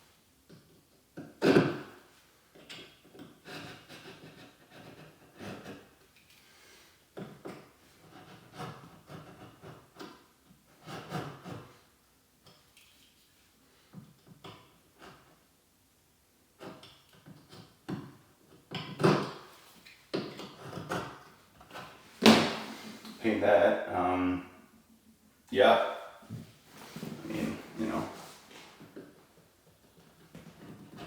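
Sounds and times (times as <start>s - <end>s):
wood knocking and scraping: 16.6s - 23.3s, 26.2s - 31.0s
heavy thump: 22.2s - 23.2s.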